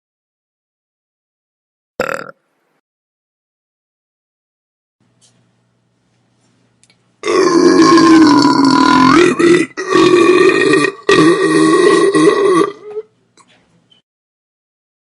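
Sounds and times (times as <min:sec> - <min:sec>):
person belching loudly: 0:02.0 - 0:02.4, 0:07.2 - 0:13.1.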